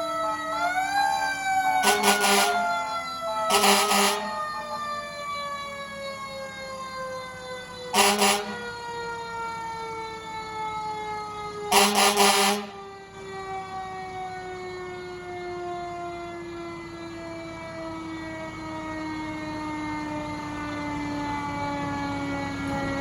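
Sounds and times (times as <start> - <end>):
mechanical siren winding down: 0.0 - 23.0
fire truck air horn blasts: 1.7 - 4.6, 7.8 - 9.0, 11.6 - 13.2.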